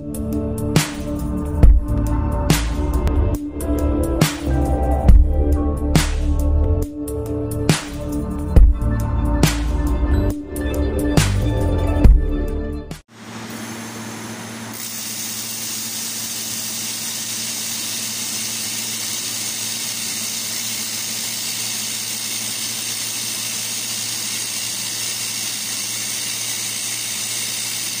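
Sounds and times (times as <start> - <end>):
laser welder hissing: 13.1 - 28.0.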